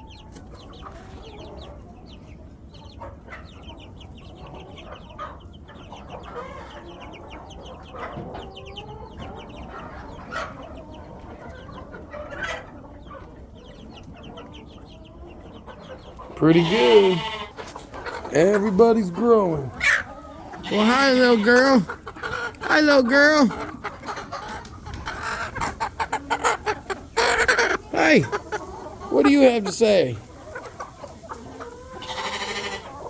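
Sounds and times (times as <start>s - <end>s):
chicks peeping: 0.0s - 33.0s
hens clucking: 0.0s - 33.0s.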